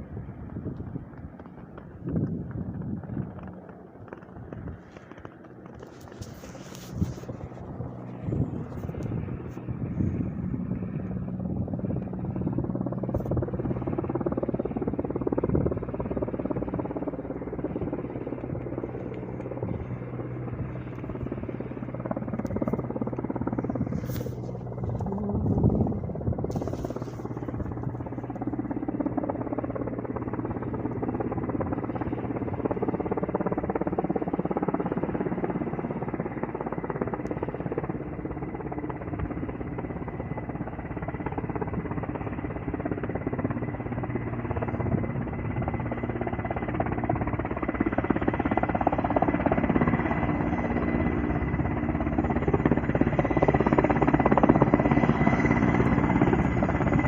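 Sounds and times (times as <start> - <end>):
helicopter rotor and engine: 0.0 - 57.0.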